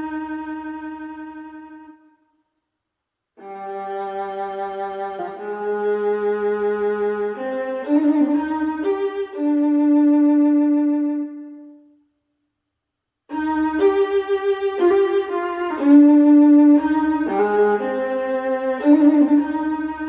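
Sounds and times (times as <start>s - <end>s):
violin music through speakers: 3.4s - 11.5s, 13.3s - 20.0s.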